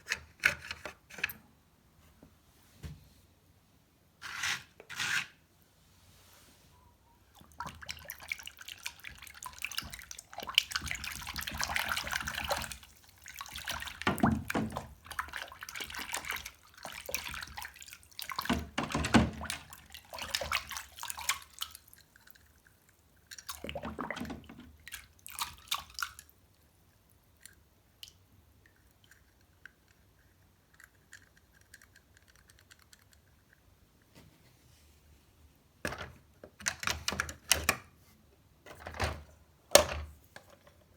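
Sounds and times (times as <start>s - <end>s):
water splashing and running: 7.6s - 21.8s.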